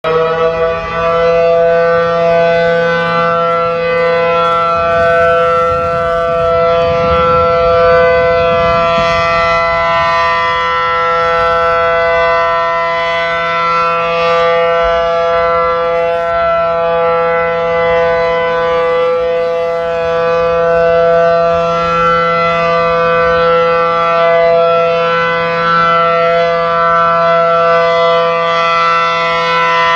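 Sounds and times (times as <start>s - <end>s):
siren held chord: 0.0s - 29.9s
low rumble: 0.1s - 13.0s.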